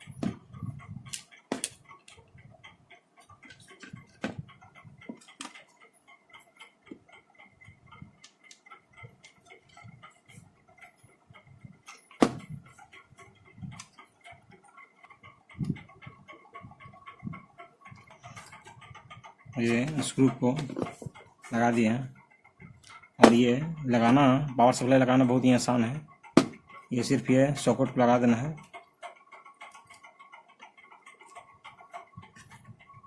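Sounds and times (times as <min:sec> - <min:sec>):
small parts clicking and tapping: 0:00.0 - 0:11.0
sharp knocks: 0:12.2 - 0:12.6, 0:26.4 - 0:26.6.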